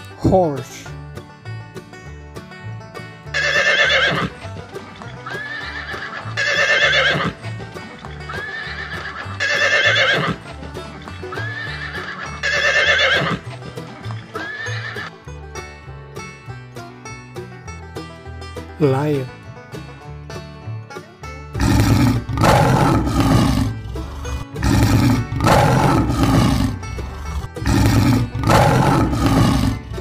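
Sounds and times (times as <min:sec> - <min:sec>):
horse neighing: 0:03.3 - 0:04.5, 0:05.2 - 0:07.4, 0:08.3 - 0:10.4, 0:11.3 - 0:13.5, 0:14.3 - 0:15.1, 0:21.6 - 0:30.0.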